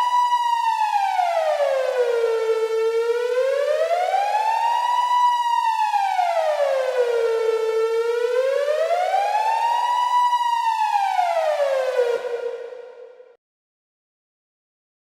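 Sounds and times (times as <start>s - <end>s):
police siren wailing: 0.0s - 13.3s.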